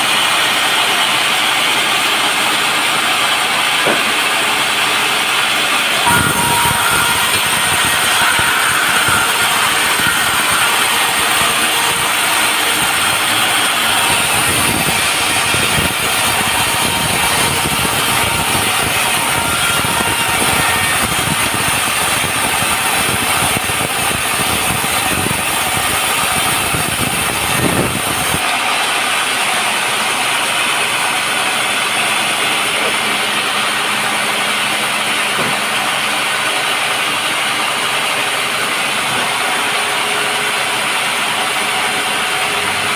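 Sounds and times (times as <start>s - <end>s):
sawmill sawing a log: 0.0s - 42.9s.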